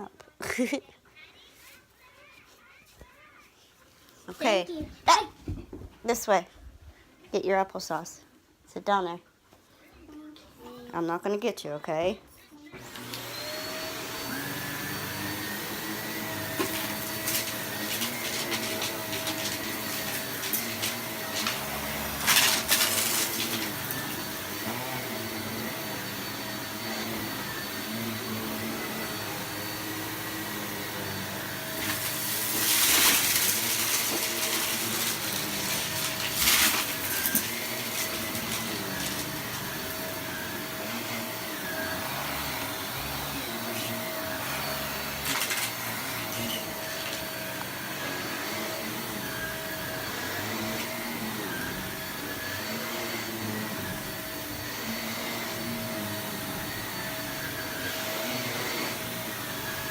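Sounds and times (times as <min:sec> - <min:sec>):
vacuum cleaner running on a rug: 0:12.7 - 0:59.9.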